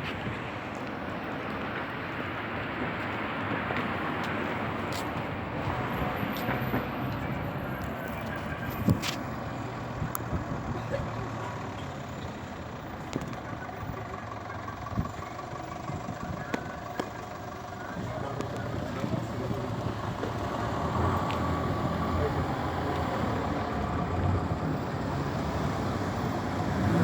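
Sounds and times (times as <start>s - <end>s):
rushing wind: 0.0s - 11.7s, 17.9s - 27.0s
vehicle engine running: 9.8s - 27.0s.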